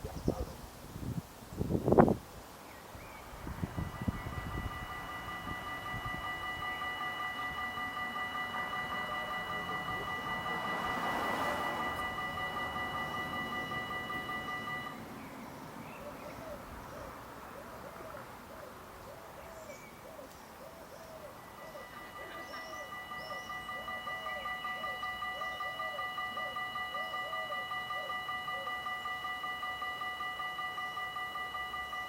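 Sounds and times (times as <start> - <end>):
level crossing warning bell: 3.4 - 17.0, 20.9 - 32.0
bird's low call: 14.5 - 28.8.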